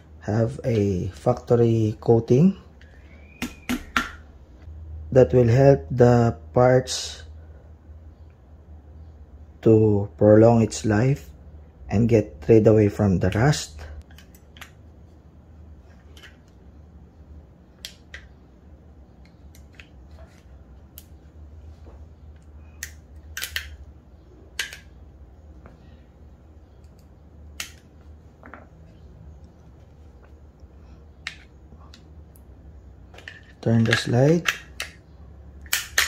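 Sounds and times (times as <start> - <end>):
steady low hum: 0.0 - 36.0
pistol parts clicking and tapping: 22.4 - 23.9, 24.5 - 25.0, 26.8 - 28.6, 31.2 - 32.5, 33.1 - 36.0.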